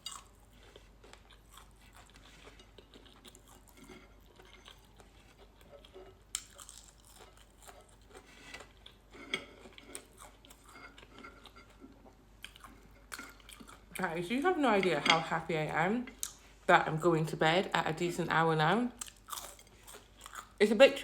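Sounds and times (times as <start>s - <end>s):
person chewing food: 0.0s - 14.0s, 16.2s - 16.6s, 19.0s - 20.6s.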